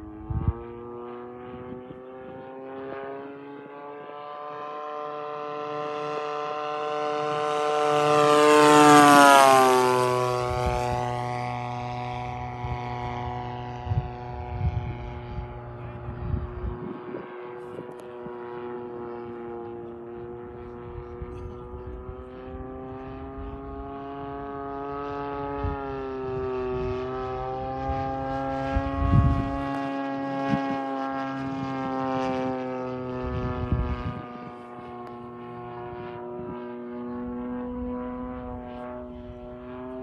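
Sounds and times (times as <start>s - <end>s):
model plane propeller drone: 0.0s - 40.0s
wind thumps on microphone: 0.2s - 0.7s, 13.8s - 18.5s, 27.8s - 29.7s, 33.2s - 34.6s.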